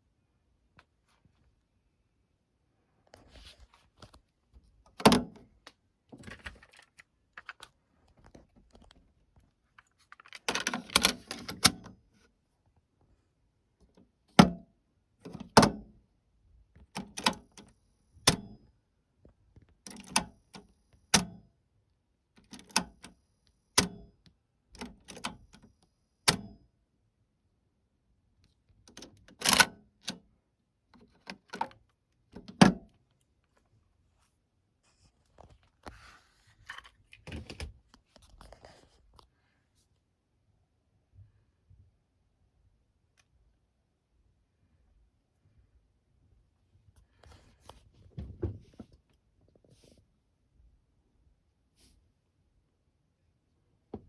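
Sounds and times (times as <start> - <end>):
cassette deck mechanism clicks: 5.0 - 5.4, 10.5 - 11.9, 15.3 - 15.8, 17.0 - 17.6, 18.3 - 18.6, 19.9 - 21.4, 22.4 - 23.1, 23.8 - 24.1, 26.3 - 26.6, 28.9 - 30.2.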